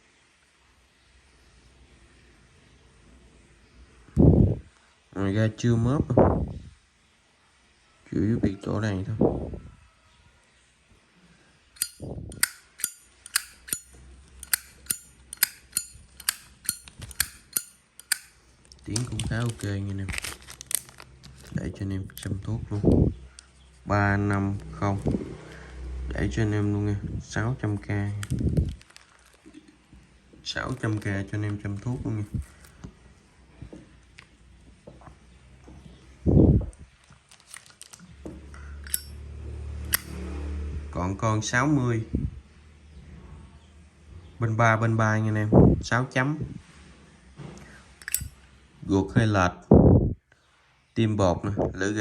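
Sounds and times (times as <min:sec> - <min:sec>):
lighter lid clicking open and shut: 0:11.8 - 0:18.4, 0:38.8 - 0:39.1, 0:39.9 - 0:40.1, 0:48.0 - 0:48.3.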